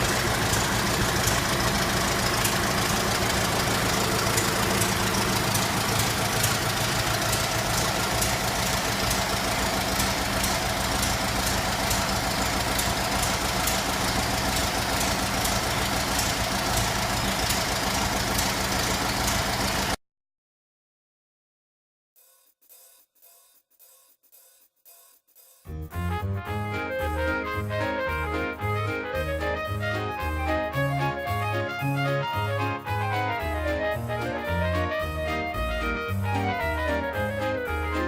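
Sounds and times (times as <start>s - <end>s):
light regular ticking: 0.0s - 19.5s
car engine idling: 0.0s - 20.0s.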